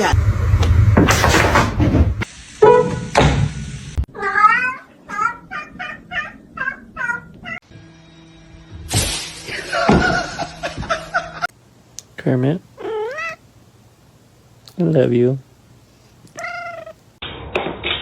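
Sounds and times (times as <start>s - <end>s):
cat meowing: 4.1s - 7.6s, 12.8s - 13.4s, 16.3s - 17.0s.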